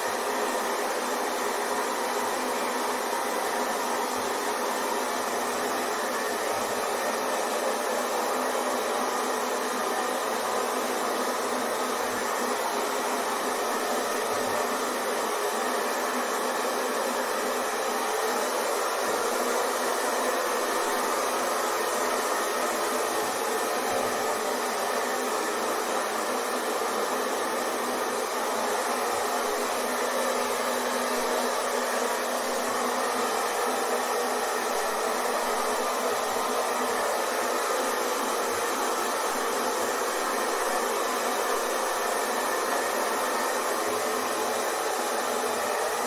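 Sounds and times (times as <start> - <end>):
hair dryer running: 0.0 - 46.0.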